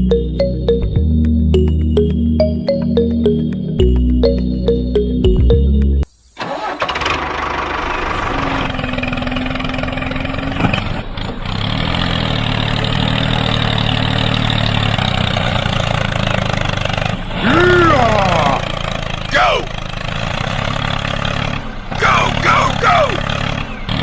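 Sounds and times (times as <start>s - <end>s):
engine running: 0.0s - 24.0s.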